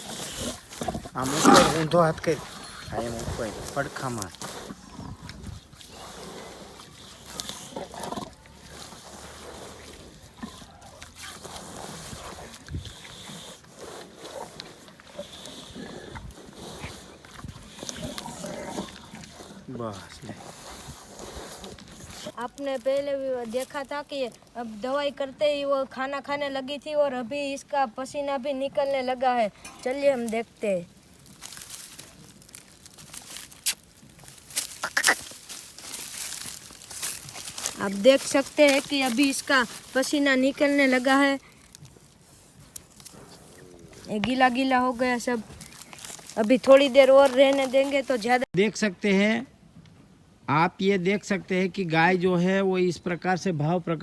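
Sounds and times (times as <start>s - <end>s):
cow vocalizing: 0.0s - 21.9s, 34.6s - 41.5s
rustling: 29.8s - 48.5s
footsteps: 30.9s - 48.5s.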